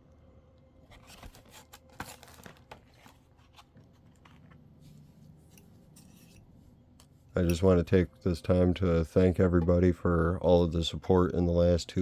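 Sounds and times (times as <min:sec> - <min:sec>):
cards tapping and rustling: 0:00.9 - 0:04.6.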